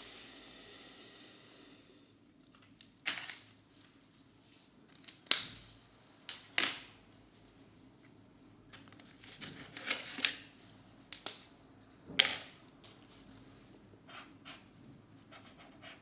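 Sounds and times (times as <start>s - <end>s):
marker scratching on paper: 15.3s - 16.0s.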